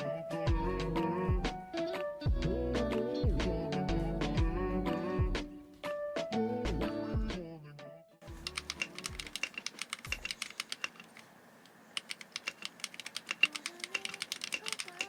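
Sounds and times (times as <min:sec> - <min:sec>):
quiet background music: 0:00.0 - 0:15.0
mechanical keyboard typing: 0:08.3 - 0:15.0.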